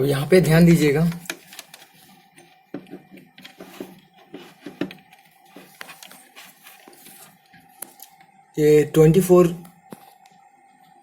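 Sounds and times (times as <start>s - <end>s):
faint steady high hum: 0.0s - 11.0s.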